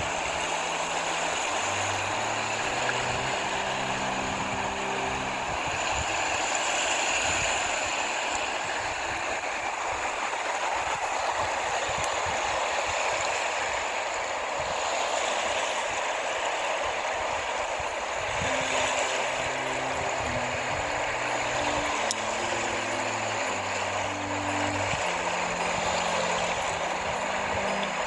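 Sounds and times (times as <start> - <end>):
engine humming: 0.0 - 8.4, 18.4 - 28.0
steady rushing noise: 0.0 - 28.0.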